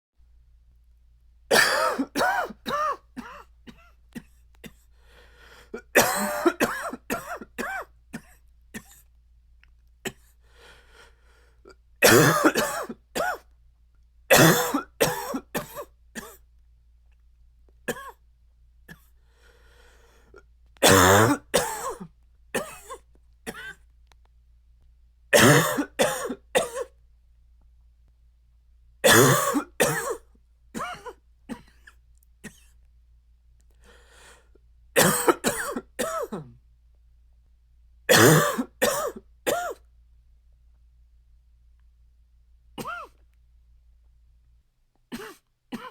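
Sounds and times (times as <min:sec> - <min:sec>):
man's dry barky cough: 0:01.5 - 0:04.8, 0:05.8 - 0:09.0, 0:12.0 - 0:13.4, 0:14.3 - 0:16.4, 0:17.9 - 0:18.2, 0:20.8 - 0:23.8, 0:25.4 - 0:26.9, 0:29.0 - 0:30.2, 0:30.8 - 0:32.7, 0:35.0 - 0:36.6, 0:38.1 - 0:39.8, 0:42.8 - 0:43.2, 0:45.1 - 0:45.9.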